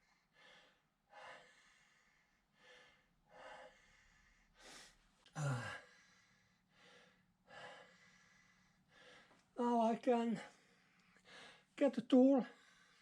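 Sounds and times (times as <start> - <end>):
man breathing heavily: 0.0 - 9.6, 10.4 - 11.8, 12.5 - 13.0.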